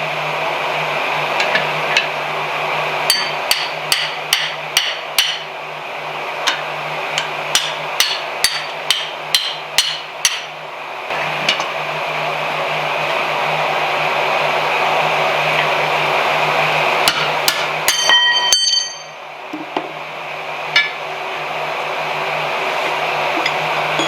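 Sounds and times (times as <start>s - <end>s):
steady rushing noise with hum: 0.0s - 24.0s
hammer ringing on anvil: 3.1s - 5.4s, 7.6s - 10.5s, 17.1s - 19.2s.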